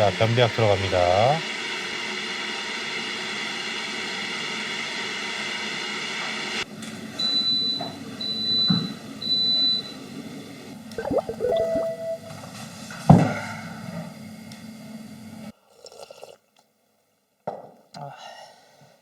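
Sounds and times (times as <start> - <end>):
high electronic beeps: 11.0 - 12.3.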